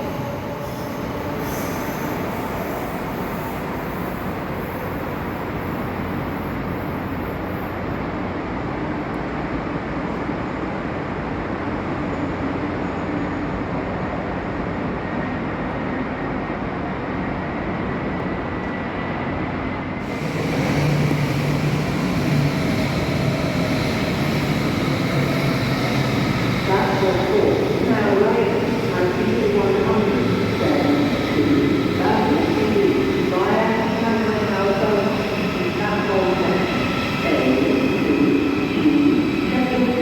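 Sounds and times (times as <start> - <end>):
train rolling rumble: 15.8 - 40.0.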